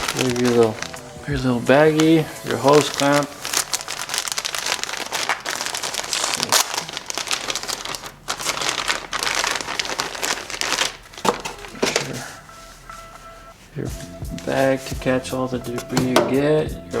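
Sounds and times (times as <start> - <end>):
plastic packaging crinkling: 0.0 - 16.6.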